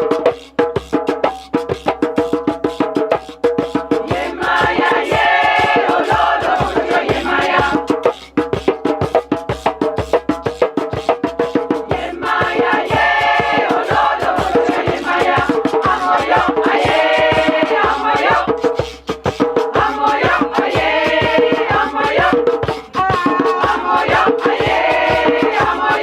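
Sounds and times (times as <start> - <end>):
fast percussion beat: 0.0 - 26.0
group of voices singing: 3.9 - 8.2, 11.8 - 19.0, 19.6 - 26.0.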